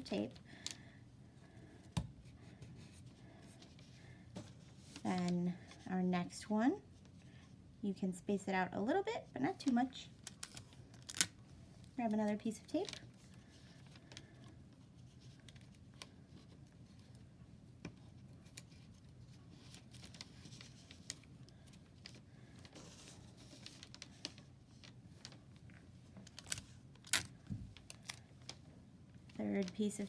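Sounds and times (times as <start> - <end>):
faint clicks and crinkles: 9.6 - 30.0.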